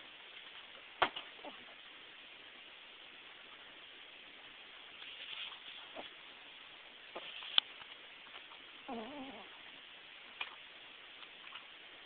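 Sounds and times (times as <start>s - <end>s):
steady background hiss: 0.0s - 12.0s
soft hissy snoring breath: 8.8s - 9.8s.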